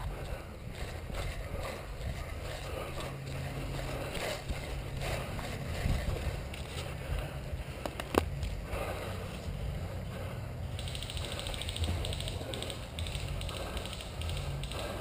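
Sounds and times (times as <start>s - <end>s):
rustling through brush: 0.0s - 15.0s
sharp clicks and crack: 10.8s - 15.0s.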